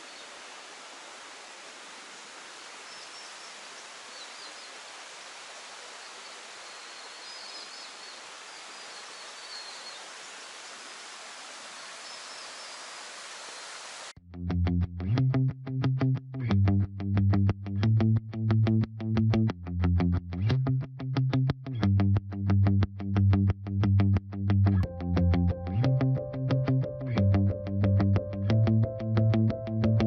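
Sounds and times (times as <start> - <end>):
rushing outdoor ambience: 0.0 - 14.1
faint high bird chirps: 2.8 - 4.8, 6.0 - 10.2, 11.7 - 13.8
distorted electric guitar music: 14.2 - 30.0.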